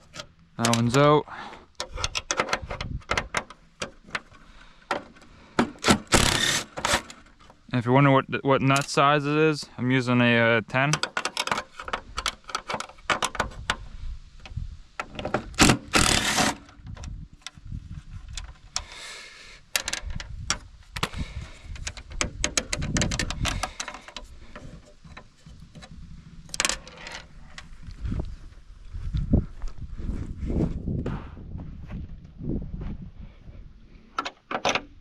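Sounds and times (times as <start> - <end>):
wrench clicking and scraping metal: 1.8 - 7.3, 10.9 - 13.8, 15.0 - 16.8, 19.6 - 27.6.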